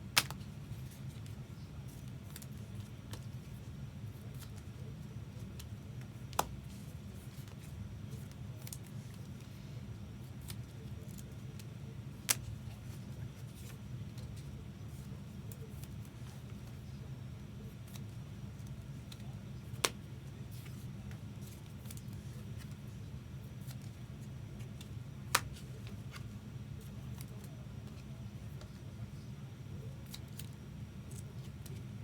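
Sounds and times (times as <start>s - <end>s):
steady low hum: 0.0s - 32.0s
trading cards being handled: 10.2s - 32.0s.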